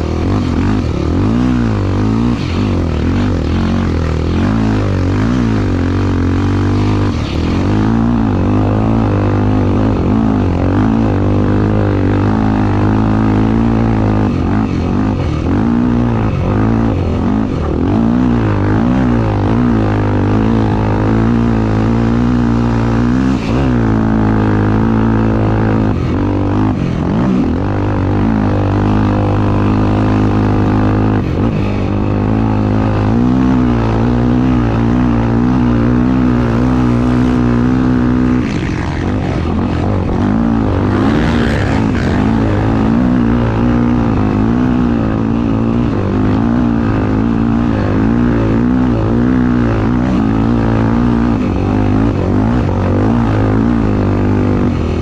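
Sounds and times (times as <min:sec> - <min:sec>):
motorcycle engine revving: 0:00.0 - 0:55.0.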